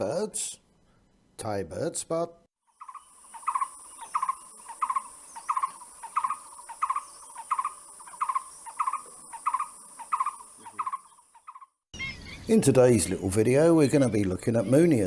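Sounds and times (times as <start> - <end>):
bird calling: 2.7 - 15.0
high insect drone: 2.8 - 11.0.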